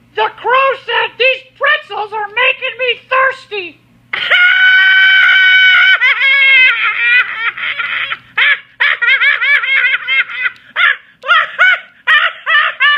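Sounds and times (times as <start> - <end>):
high-pitched laughter: 4.1 - 12.9.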